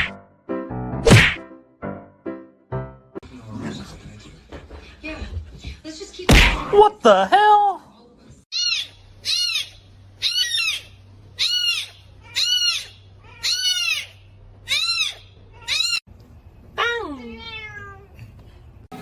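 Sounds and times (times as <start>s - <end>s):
cat meowing: 8.6s - 16.0s, 17.2s - 18.2s.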